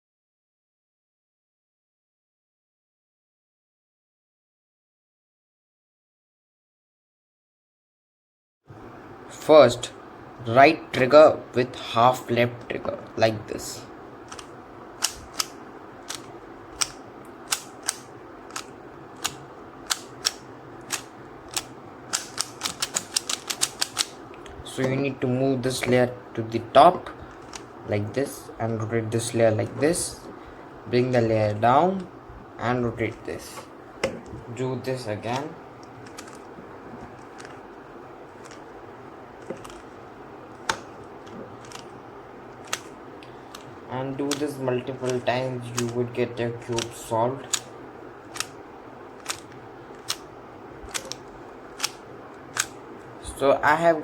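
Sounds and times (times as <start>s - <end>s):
steady hiss: 8.8s - 54.0s
puzzle cube layers clicking: 14.3s - 25.0s, 27.3s - 27.7s, 35.2s - 37.7s, 38.3s - 38.7s, 39.4s - 40.0s, 40.6s - 48.6s, 49.2s - 50.3s, 50.9s - 52.8s.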